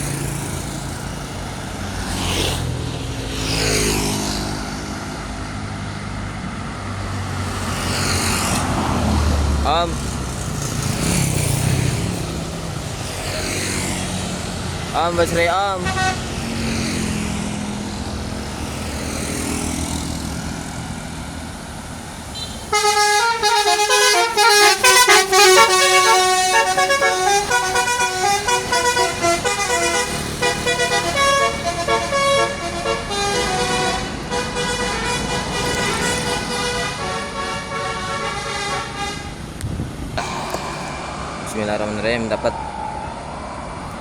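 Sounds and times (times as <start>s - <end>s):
vehicle engine: 0.0s - 44.0s
musical air horn: 15.8s - 16.6s, 22.3s - 39.4s.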